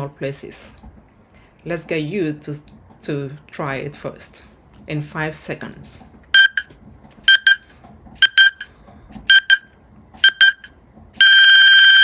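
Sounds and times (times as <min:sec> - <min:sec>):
long loud timer beep: 0:06.4 - 0:06.7, 0:07.3 - 0:08.7, 0:09.3 - 0:09.6, 0:10.2 - 0:12.0
timer double beeps: 0:06.4 - 0:06.7, 0:07.3 - 0:08.7, 0:09.3 - 0:12.0.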